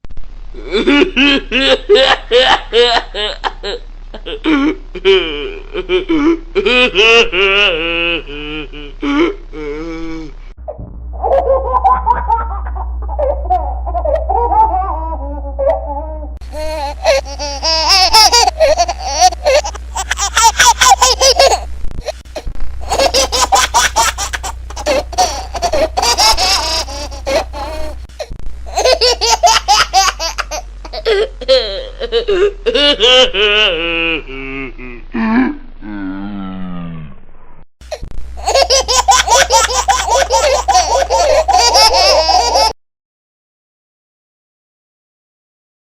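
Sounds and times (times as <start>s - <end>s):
baby laughing: 11.2s - 21.7s, 22.8s - 28.0s, 28.7s - 35.0s, 38.4s - 42.8s.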